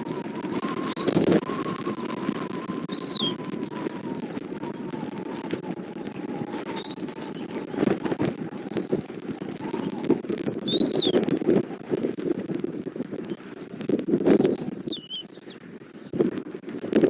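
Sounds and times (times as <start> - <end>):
wind buffeting microphone: 0.0 - 17.0
short gliding bird whistles: 2.8 - 5.7, 6.4 - 16.3
high thin bird chirps: 2.9 - 5.7, 6.3 - 16.3.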